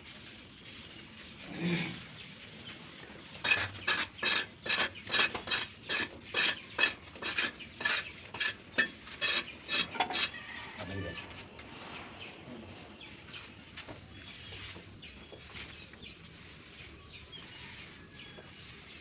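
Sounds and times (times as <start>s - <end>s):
steel trowel scraping mortar: 3.3s - 10.4s.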